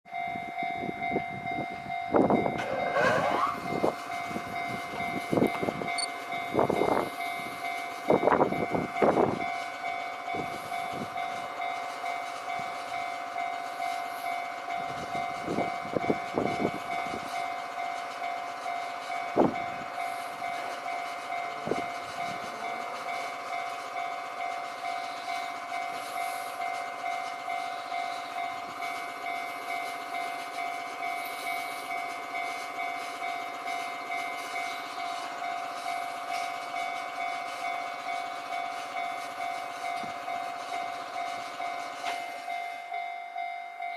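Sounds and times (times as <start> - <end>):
train wheels clacking on rails: 0.1 - 43.9
level crossing alarm ringing: 36.8 - 43.9.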